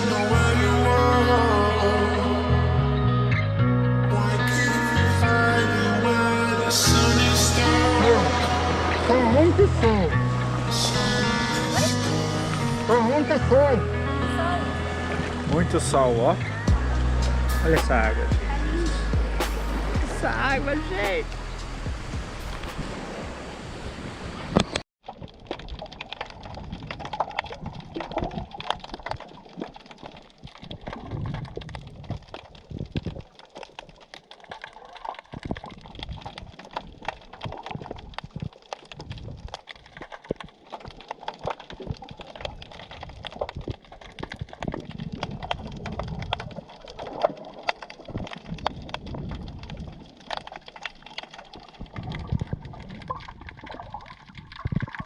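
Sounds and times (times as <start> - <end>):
low water sloshing: 6.2 - 55.0
underwater crackle of clicks: 24.5 - 55.0.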